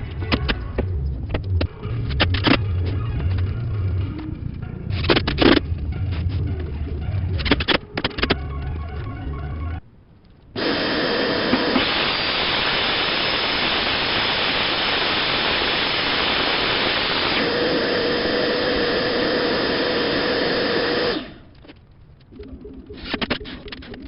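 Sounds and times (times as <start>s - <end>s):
power tool running: 10.6s - 21.4s.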